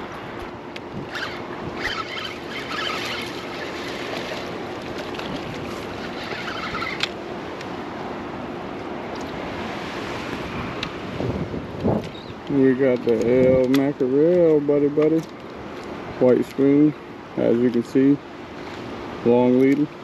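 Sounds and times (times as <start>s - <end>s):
wind on microphone: 0.0s - 7.1s, 9.4s - 13.8s
open water washing: 0.0s - 20.0s.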